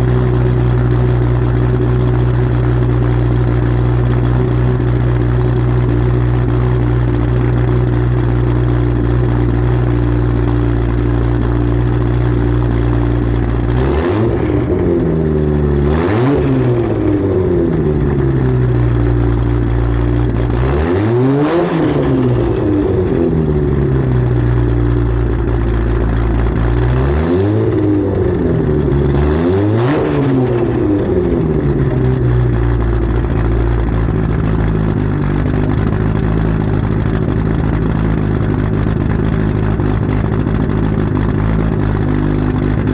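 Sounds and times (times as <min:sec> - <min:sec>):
car engine idling: 0:00.0 - 0:42.9
engine revving: 0:12.6 - 0:42.9.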